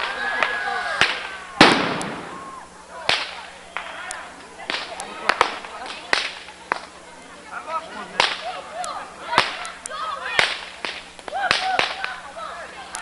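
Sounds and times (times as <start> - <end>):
firecracker bangs: 0.0 - 2.5, 4.7 - 6.8, 8.2 - 8.5, 10.3 - 12.1
small firecracker cracks: 0.0 - 7.0, 8.1 - 12.2.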